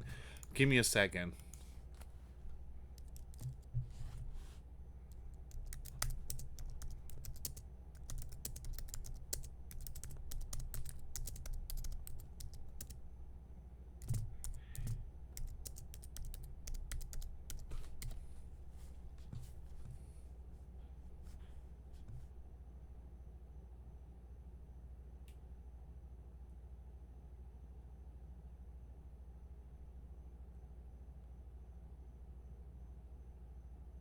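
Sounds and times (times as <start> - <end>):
typing on a keyboard: 1.4 - 4.2, 5.1 - 13.2, 14.0 - 18.3.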